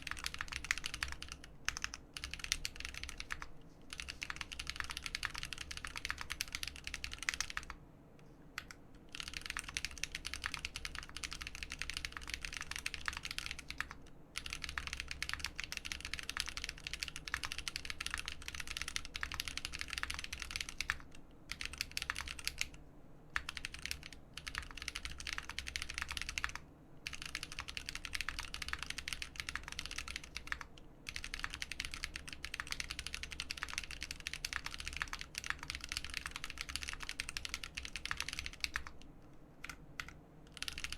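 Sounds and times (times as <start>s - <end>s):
fast typing on mechanical keyboard: 0.0s - 7.8s, 8.6s - 22.8s, 23.4s - 40.9s.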